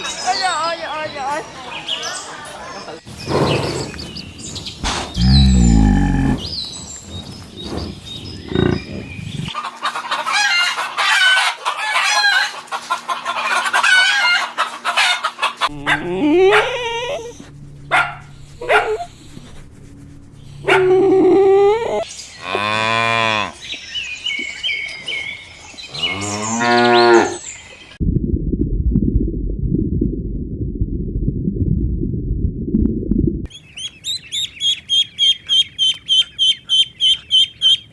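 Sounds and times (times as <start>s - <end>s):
chickens calling: 0.0s - 19.4s, 20.3s - 28.0s, 33.5s - 37.9s
low rumbling noise: 4.8s - 9.5s, 15.7s - 22.0s, 28.0s - 33.5s
cattle mooing: 5.2s - 6.5s, 15.7s - 19.5s, 20.6s - 23.6s, 25.9s - 27.4s.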